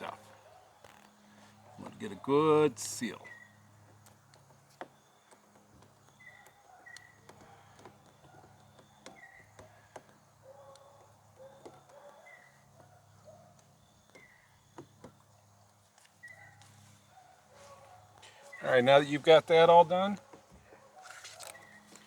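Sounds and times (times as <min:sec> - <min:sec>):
bird chirps: 0:03.1 - 0:03.7, 0:06.0 - 0:09.8, 0:16.2 - 0:17.0
small clicks and taps: 0:03.8 - 0:12.1.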